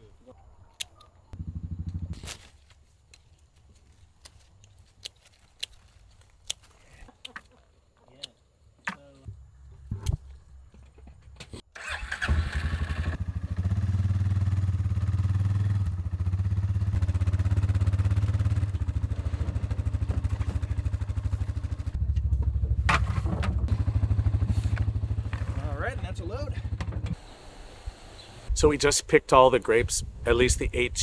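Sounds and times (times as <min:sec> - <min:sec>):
tractor engine running: 0:09.3 - 0:27.3.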